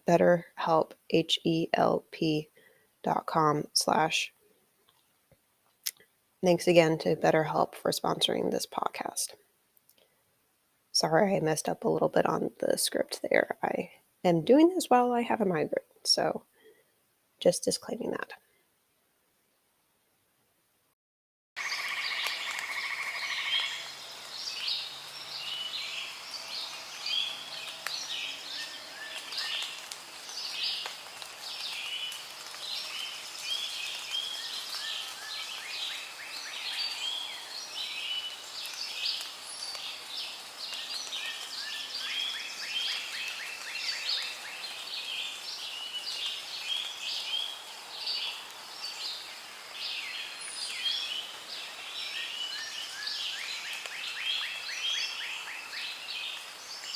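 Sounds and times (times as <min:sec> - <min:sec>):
faint steady hiss: 0:00.0 - 0:21.0, 0:21.6 - 0:56.9
birds chirping and trilling: 0:21.6 - 0:56.9.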